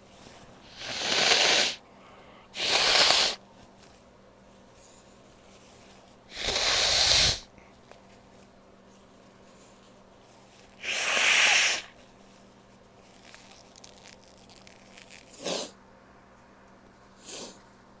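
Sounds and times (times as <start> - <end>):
woman blowing her nose: 0.7 - 1.8, 2.6 - 3.4, 6.3 - 7.5, 10.8 - 11.9.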